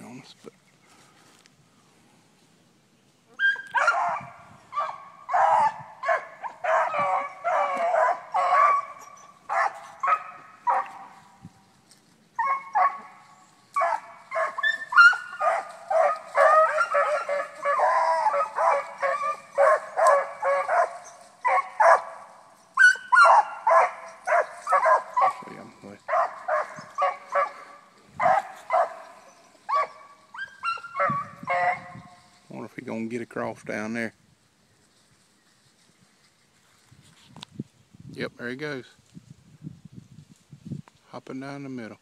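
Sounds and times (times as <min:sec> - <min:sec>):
dogs baying: 0:03.4 - 0:11.2, 0:12.4 - 0:32.2.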